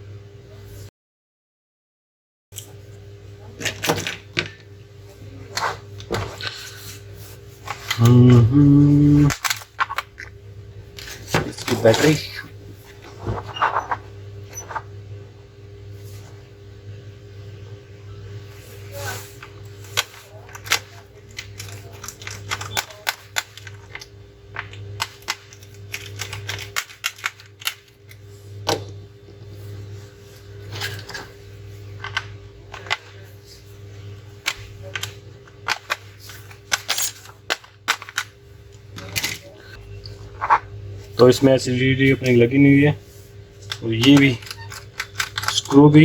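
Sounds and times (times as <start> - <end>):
low electrical hum: 2.6 - 46.0
laptop parts clicking and snapping: 43.7 - 45.7.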